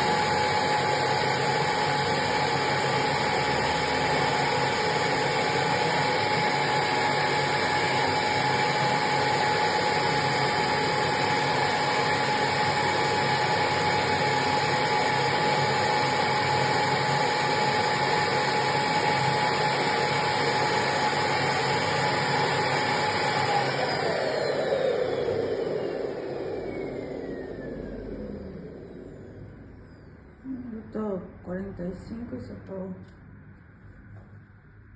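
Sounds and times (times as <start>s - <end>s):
vacuum cleaner motor whining: 0.0s - 30.9s.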